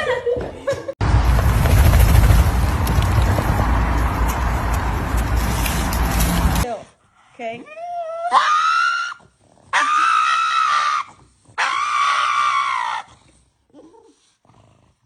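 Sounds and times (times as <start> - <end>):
pet screaming calls: 9.8 - 13.1.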